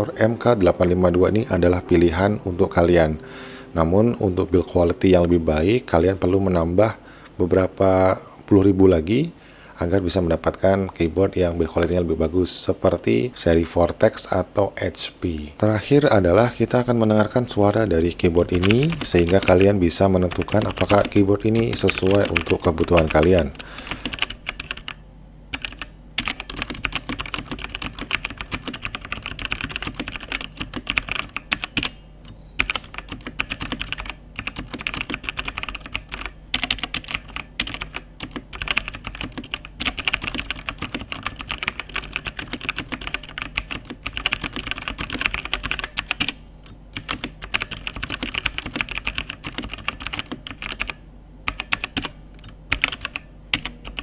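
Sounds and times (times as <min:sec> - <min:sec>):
mechanical keyboard typing: 0:18.3 - 0:54.0.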